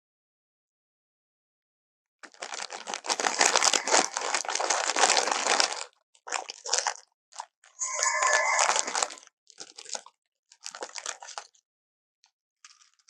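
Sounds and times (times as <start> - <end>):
dinosaur roar: 7.8 - 9.1.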